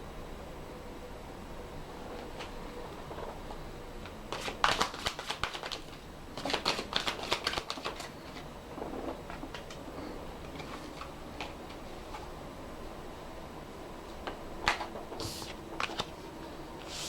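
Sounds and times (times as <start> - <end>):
cards being shuffled: 4.3 - 8.5, 14.6 - 16.2.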